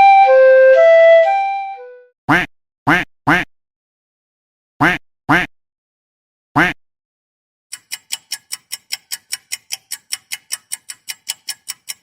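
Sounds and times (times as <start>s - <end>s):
cartoon duck quack: 2.3s - 3.5s, 4.8s - 5.5s, 6.6s - 6.8s
clock ticking quickly: 7.7s - 12.0s.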